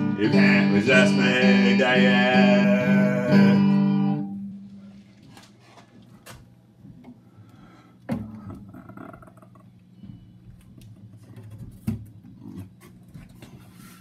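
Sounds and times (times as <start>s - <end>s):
guitar chord strummed: 0.0s - 4.9s.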